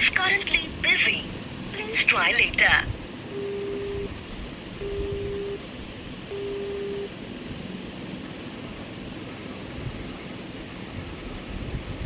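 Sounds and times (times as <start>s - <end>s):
telephone busy tone beeps: 3.3s - 4.1s, 4.8s - 5.6s, 6.3s - 7.1s.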